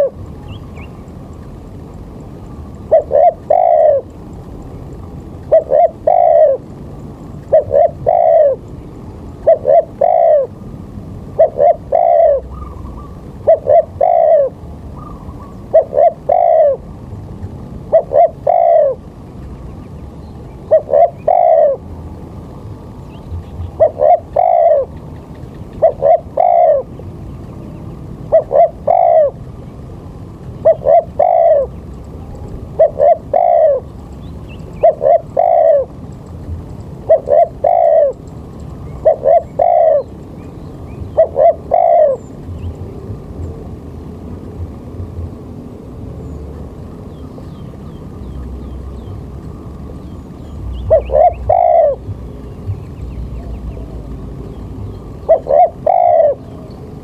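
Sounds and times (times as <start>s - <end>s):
bird calling three-note phrase: 50.1s - 57.0s.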